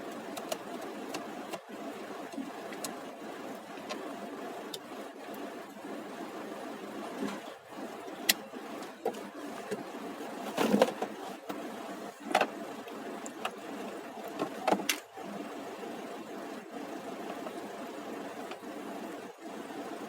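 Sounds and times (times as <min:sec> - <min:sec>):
steady background hum: 0:00.0 - 0:20.0.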